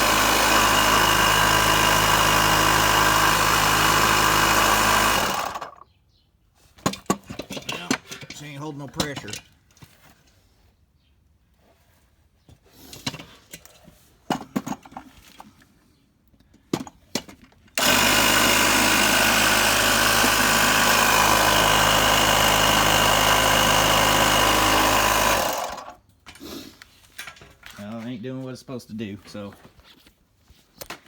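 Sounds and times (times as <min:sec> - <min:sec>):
electric pump motor running: 0:00.0 - 0:05.8, 0:17.8 - 0:26.0
handling knocks and clicks: 0:06.8 - 0:10.0
person talking: 0:07.6 - 0:09.4, 0:27.8 - 0:29.6.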